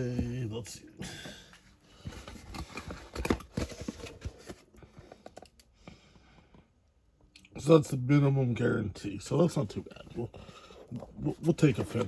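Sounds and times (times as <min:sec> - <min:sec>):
card packs clicking and rustling: 0:02.0 - 0:05.6, 0:10.0 - 0:12.0.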